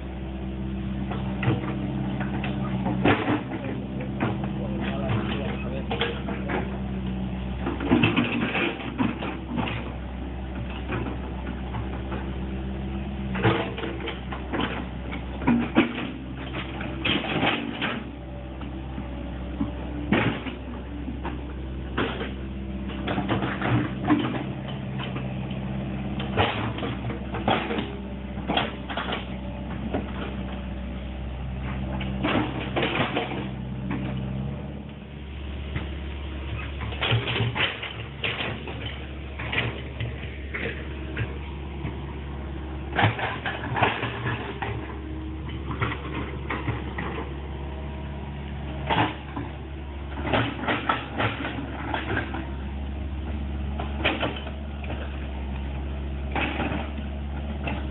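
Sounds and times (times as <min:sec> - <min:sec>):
excavator engine running: 0:00.0 - 0:57.9
machine clanks and knocks: 0:01.0 - 0:12.4, 0:13.3 - 0:18.8, 0:19.4 - 0:30.6, 0:31.5 - 0:34.3, 0:35.7 - 0:57.9.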